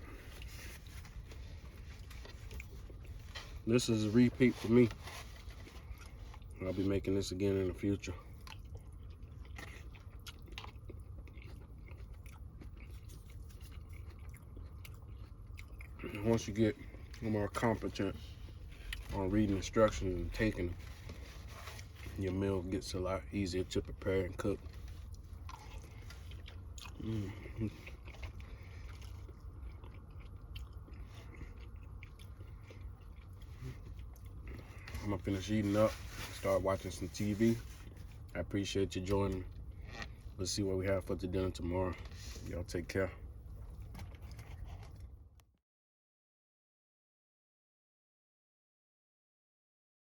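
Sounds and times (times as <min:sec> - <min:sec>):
person chewing food: 0:00.0 - 0:03.7, 0:04.3 - 0:06.9, 0:08.0 - 0:22.8, 0:23.7 - 0:38.4, 0:39.2 - 0:40.4, 0:43.2 - 0:45.4
steady low hum: 0:00.0 - 0:45.4.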